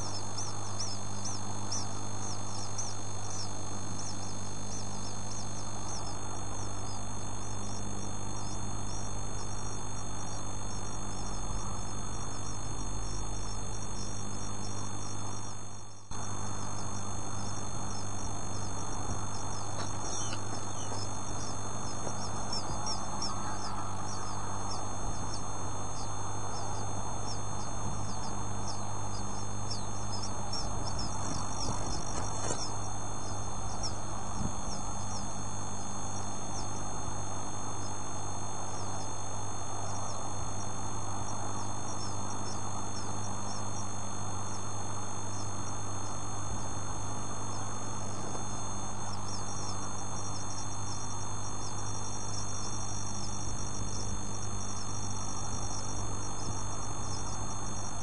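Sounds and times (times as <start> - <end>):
chicks peeping: 0.0 - 4.8, 18.6 - 35.3
low electrical hum: 0.0 - 58.0.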